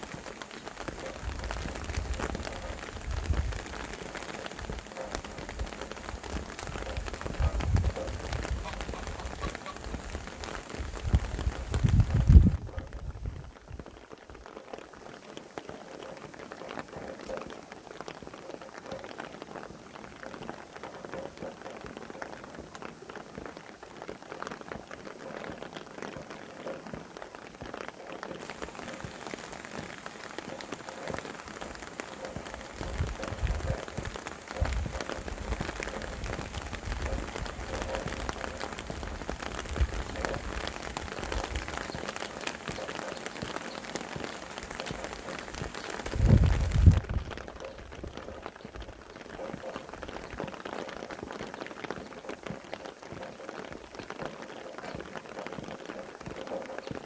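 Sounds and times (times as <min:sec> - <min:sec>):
steady rain falling: 0:00.0 - 0:57.0
gusty wind rumbles: 0:00.8 - 0:03.9, 0:05.5 - 0:13.6, 0:32.4 - 0:42.0, 0:46.1 - 0:48.4.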